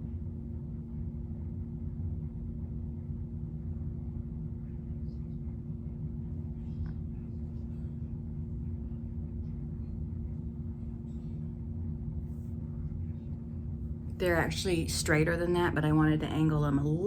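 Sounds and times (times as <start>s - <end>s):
low hum with rumble: 0.0s - 17.0s.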